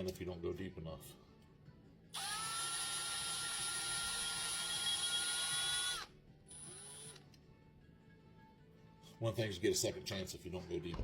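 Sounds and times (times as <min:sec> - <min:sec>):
small power drill whining: 0:02.1 - 0:07.3.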